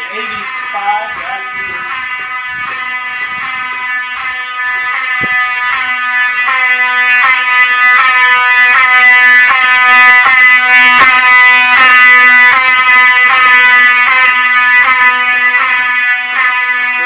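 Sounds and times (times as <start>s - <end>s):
fire alarm horns pulsing: 0.0s - 17.0s.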